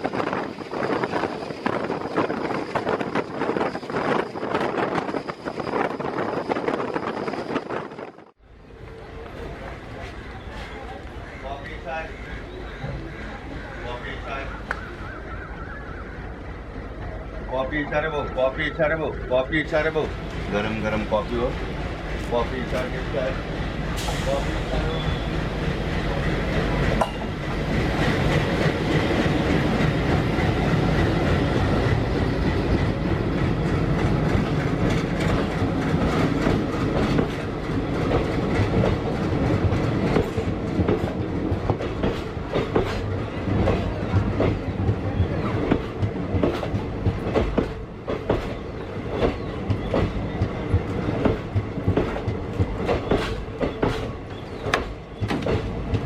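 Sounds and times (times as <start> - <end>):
moving train rumble: 0.0 - 56.0
train wheels clacking on rail joints: 20.0 - 56.0.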